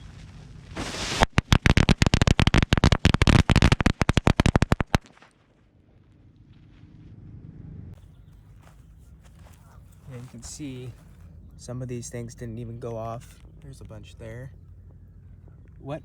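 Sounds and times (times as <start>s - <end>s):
firecrackers popping: 0.0s - 5.4s.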